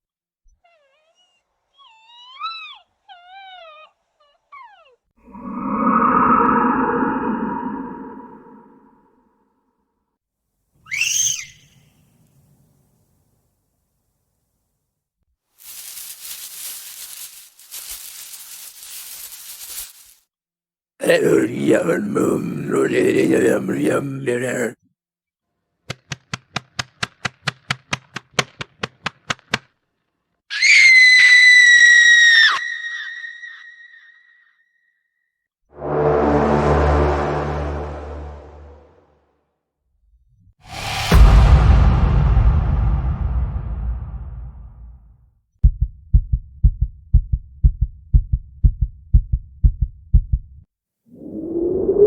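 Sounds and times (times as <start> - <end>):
swelling held tone: 5.3 - 9.1
shrill scream: 10.9 - 11.7, 30.5 - 34.6
fast low heartbeat: 45.6 - 50.6.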